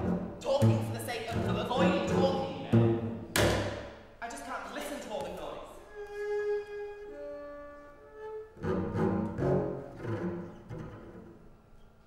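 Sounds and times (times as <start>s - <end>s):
contemporary concert music: 0.0s - 4.1s.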